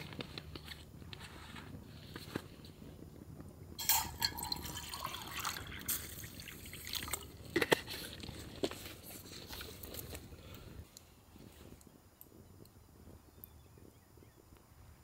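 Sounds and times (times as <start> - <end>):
liquid pouring into container: 3.8 - 7.4.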